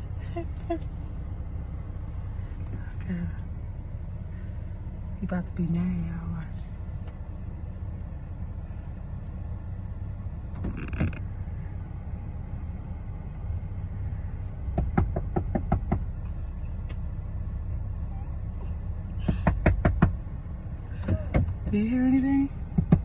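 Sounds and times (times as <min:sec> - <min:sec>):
car engine idling: 0:00.0 - 0:23.0
knocking on car: 0:14.7 - 0:16.1, 0:19.2 - 0:20.2, 0:22.7 - 0:23.0.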